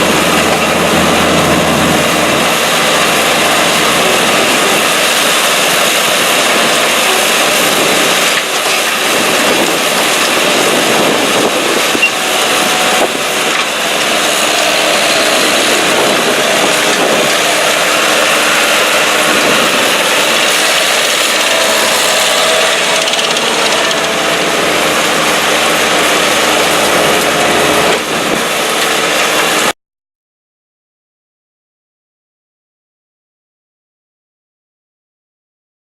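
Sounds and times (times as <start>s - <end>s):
engine and machinery drone: 0.0s - 29.7s.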